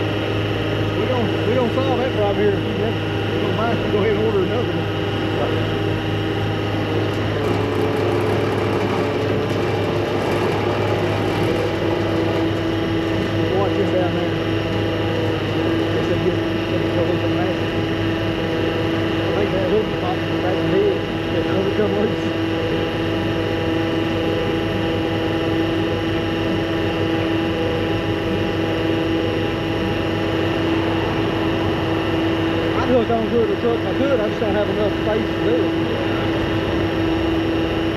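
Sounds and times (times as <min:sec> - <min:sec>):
truck engine idling: 0:00.0 - 0:25.9, 0:27.1 - 0:37.9
crane motor whine: 0:00.0 - 0:37.9
low mechanical hum: 0:00.0 - 0:37.9.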